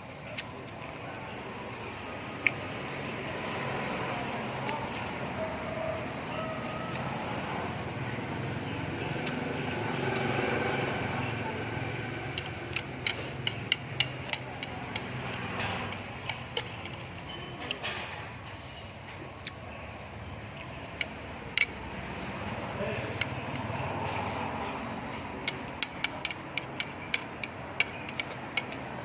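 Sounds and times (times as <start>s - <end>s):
steady background hum: 0.0s - 29.0s
sharp clicks and taps: 12.3s - 17.8s, 19.4s - 21.8s, 25.4s - 29.0s.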